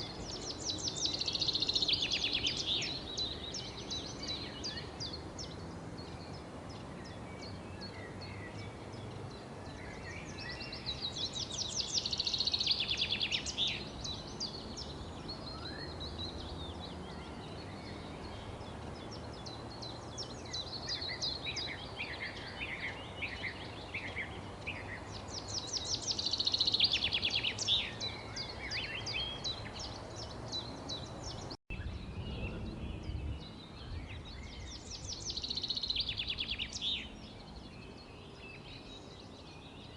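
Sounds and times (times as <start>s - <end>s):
outdoor background hiss: 0.0s - 39.9s
songbirds chirping and trilling: 0.0s - 39.9s.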